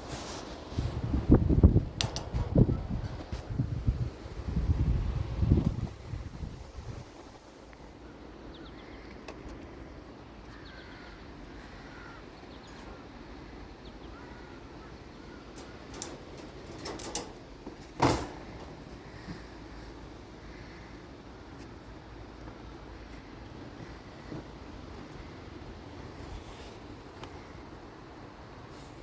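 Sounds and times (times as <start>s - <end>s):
steady background noise: 0.0s - 29.0s
faint calls: 7.9s - 13.1s.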